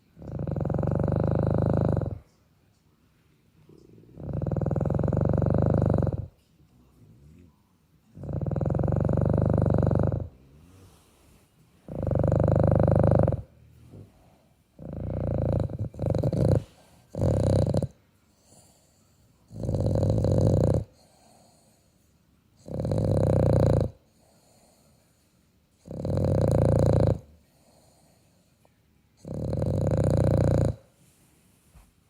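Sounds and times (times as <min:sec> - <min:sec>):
quiet breathing: 0:00.0 - 0:22.8, 0:23.4 - 0:32.0
loud snoring: 0:00.2 - 0:02.2, 0:03.9 - 0:06.4, 0:08.2 - 0:11.0, 0:11.9 - 0:14.0, 0:14.8 - 0:18.7, 0:19.5 - 0:21.6, 0:22.6 - 0:24.8, 0:25.8 - 0:28.0, 0:29.2 - 0:30.8.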